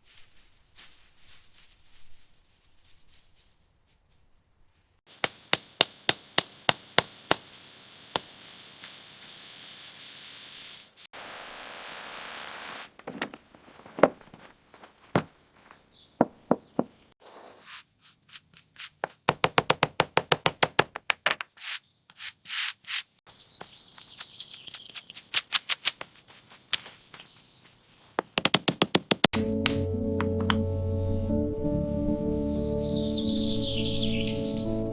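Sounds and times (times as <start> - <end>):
hand tools tapping stone: 5.1 - 7.5, 19.3 - 21.5, 28.2 - 29.8
music: 29.4 - 34.9.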